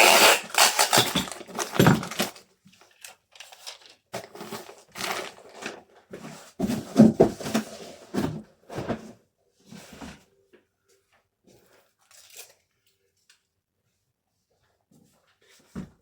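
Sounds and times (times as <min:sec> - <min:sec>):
packaging rustling and crinkling: 0:00.5 - 0:09.0.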